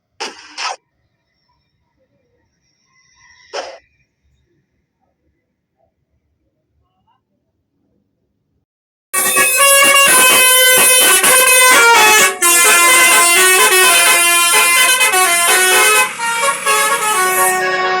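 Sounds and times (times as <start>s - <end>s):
multi-tone bus air horn melody: 9.2s - 18.0s.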